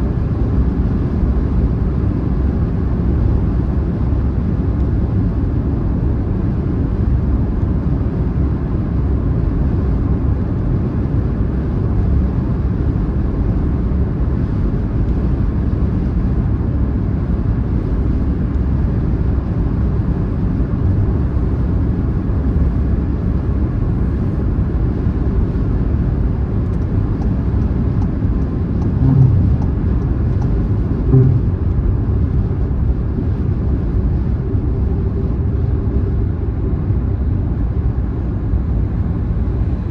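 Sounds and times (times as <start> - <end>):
car driving road rumble: 20.4 - 35.4
low thumps: 28.8 - 32.6.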